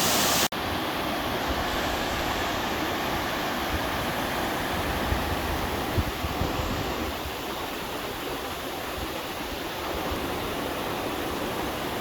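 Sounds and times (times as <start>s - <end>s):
water rushing over rock: 0.0s - 6.2s.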